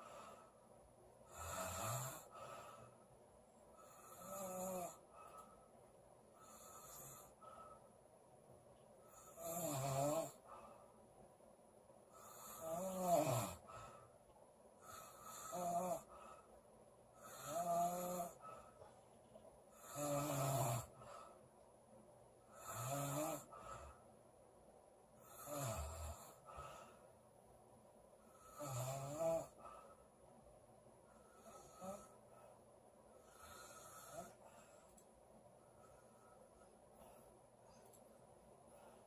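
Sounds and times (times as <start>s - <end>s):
woman snoring: 1.3s - 2.7s, 3.7s - 5.2s, 6.4s - 7.4s, 9.1s - 10.5s, 12.1s - 13.9s, 14.8s - 16.3s, 17.2s - 18.7s, 19.7s - 21.0s, 22.5s - 23.9s, 25.2s - 26.7s, 28.3s - 29.6s, 31.3s - 32.2s, 33.2s - 34.5s.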